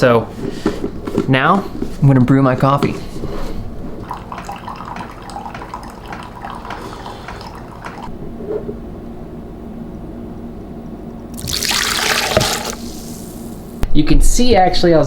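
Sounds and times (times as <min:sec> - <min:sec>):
liquid trickling and sputtering: 0:11.4 - 0:13.8.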